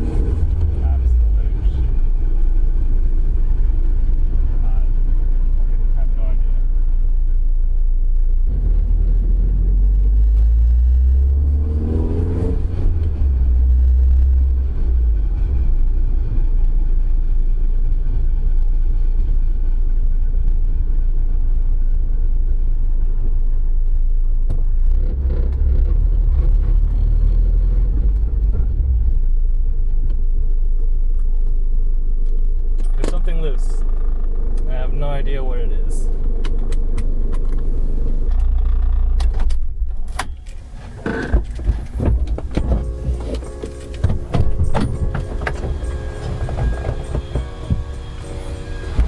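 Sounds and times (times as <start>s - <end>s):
car engine rumbling and revving: 0.0s - 49.0s.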